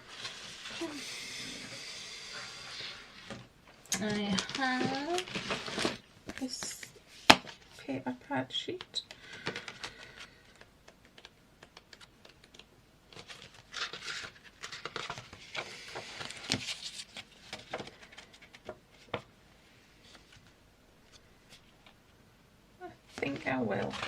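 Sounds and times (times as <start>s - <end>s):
paper sheets rustling: 0.0s - 1.0s, 4.0s - 7.6s, 9.2s - 19.2s, 23.1s - 24.0s.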